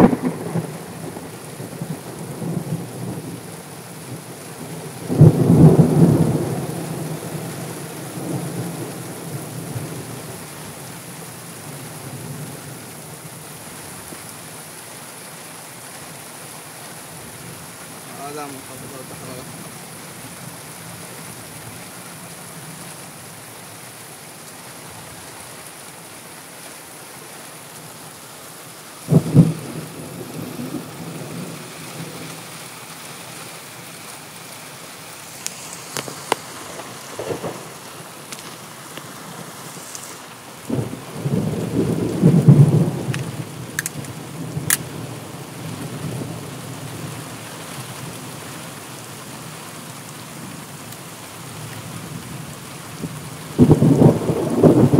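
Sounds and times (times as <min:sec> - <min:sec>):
thunderclap: 0:00.0 - 0:00.8, 0:53.6 - 0:54.9
steady rain: 0:00.0 - 0:54.9
peal of thunder: 0:40.7 - 0:43.8, 0:53.6 - 0:54.9.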